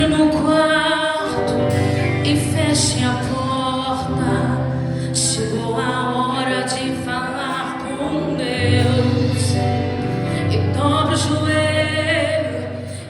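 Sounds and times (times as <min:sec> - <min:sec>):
sustained chords: 0:07.9 - 0:13.0.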